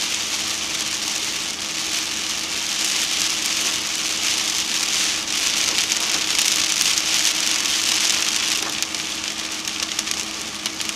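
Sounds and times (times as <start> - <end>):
faint vehicle hum: 0.0 - 10.9
rain hissing on a moving car: 0.0 - 10.9.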